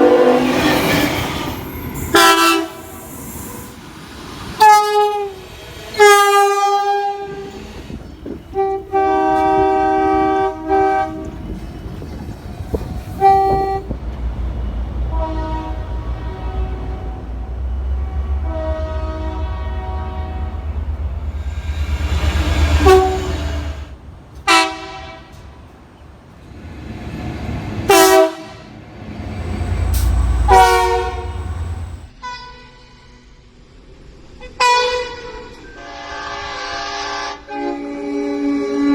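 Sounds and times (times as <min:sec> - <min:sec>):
train horn blasts: 0:00.0 - 0:00.8, 0:02.1 - 0:03.0, 0:04.6 - 0:07.6, 0:08.5 - 0:11.6, 0:13.2 - 0:14.0, 0:14.8 - 0:25.5, 0:27.9 - 0:33.4, 0:34.5 - 0:38.9
train rumbling: 0:00.0 - 0:32.2.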